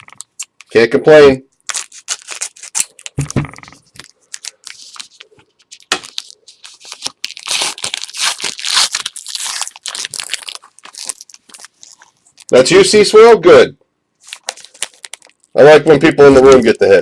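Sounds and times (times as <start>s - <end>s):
wrapper tearing and crinkling: 1.6s - 12.6s, 14.2s - 15.6s.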